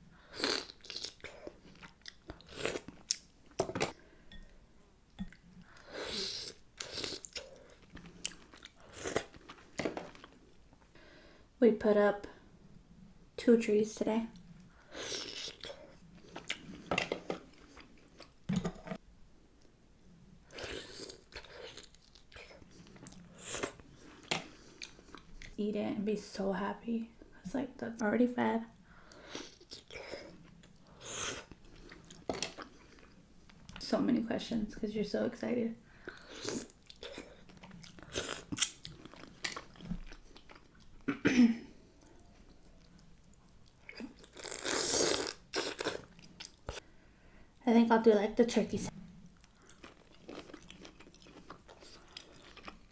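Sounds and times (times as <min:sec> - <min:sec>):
person chewing and biting: 0:00.4 - 0:03.3, 0:36.2 - 0:40.9, 0:43.6 - 0:46.8, 0:49.4 - 0:52.9
wet biting and chewing: 0:36.3 - 0:40.9.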